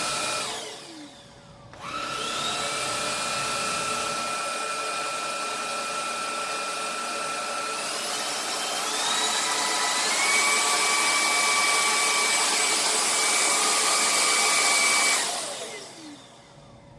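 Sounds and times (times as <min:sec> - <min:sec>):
stick vacuum motor whine: 0:00.0 - 0:16.9.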